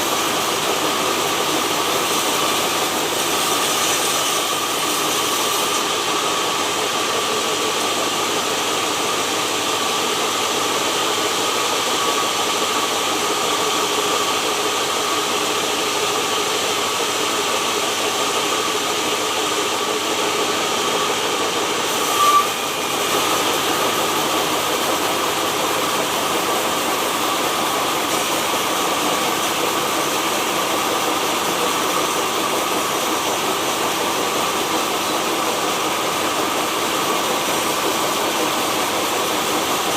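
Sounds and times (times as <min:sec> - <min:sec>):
sawmill machinery whining: 0:00.0 - 0:39.9.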